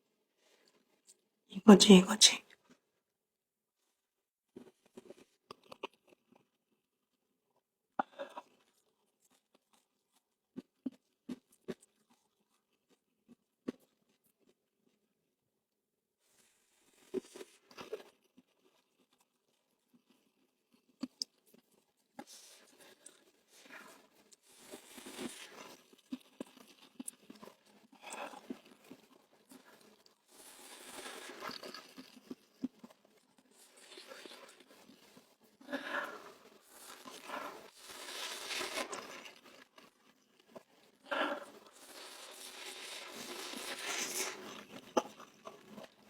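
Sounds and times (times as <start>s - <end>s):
crunching food: 4.5s - 6.7s, 8.0s - 15.0s, 16.8s - 46.0s
chewing and mouth clicks: 4.6s - 6.6s, 8.0s - 14.6s, 17.1s - 35.3s
food wrapper crinkling: 29.5s - 35.2s, 36.1s - 46.0s.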